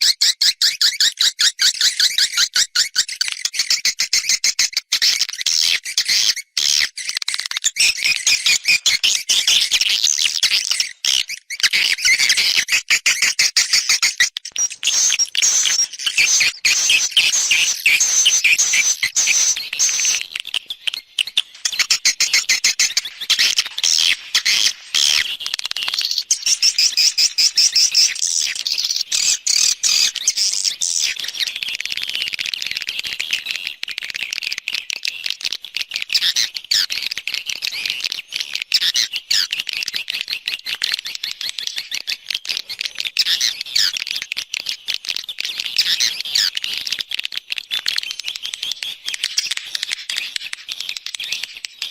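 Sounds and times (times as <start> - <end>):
swiftlet chirps and twitters: 7.6 - 31.4.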